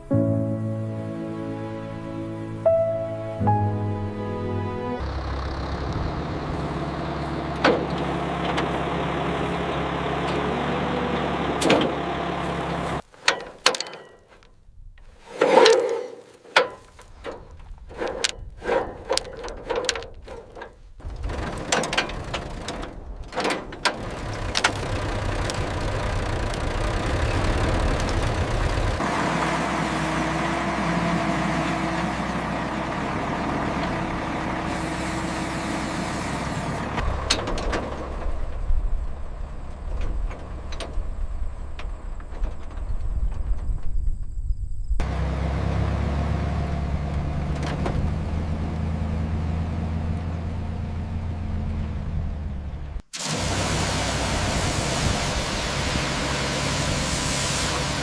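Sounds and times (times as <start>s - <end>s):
vehicle engine running: 3.6s - 13.1s, 21.0s - 42.6s, 45.0s - 58.0s
metallic knocks and clanks: 13.2s - 14.5s, 16.5s - 29.0s.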